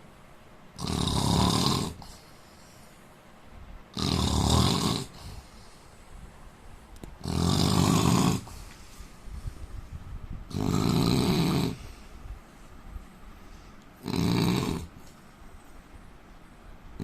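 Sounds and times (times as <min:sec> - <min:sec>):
man snoring: 0:00.8 - 0:02.2, 0:03.9 - 0:05.4, 0:07.2 - 0:08.5, 0:10.5 - 0:11.9, 0:14.0 - 0:14.9
quiet breathing: 0:01.9 - 0:03.5, 0:05.0 - 0:07.3, 0:08.2 - 0:10.5, 0:11.4 - 0:17.0.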